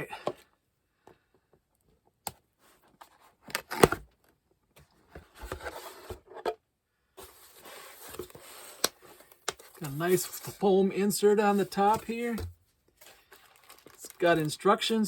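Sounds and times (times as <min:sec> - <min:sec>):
cardboard rustling and scraping: 0:04.9 - 0:06.6, 0:07.2 - 0:14.3.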